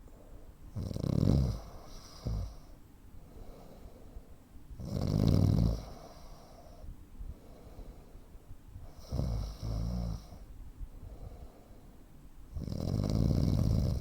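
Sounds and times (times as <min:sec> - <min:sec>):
man snoring: 0:00.8 - 0:02.6, 0:04.8 - 0:06.3, 0:09.0 - 0:10.4, 0:12.6 - 0:14.0.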